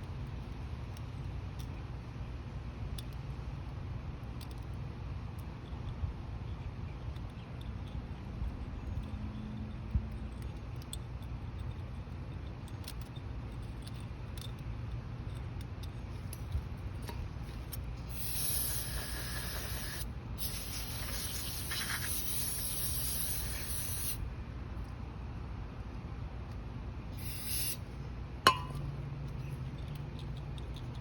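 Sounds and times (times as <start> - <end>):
small parts clicking: 2.9 - 6.0, 7.0 - 24.2, 29.2 - 31.0
pressurised spray hissing: 18.0 - 24.2, 27.2 - 27.8.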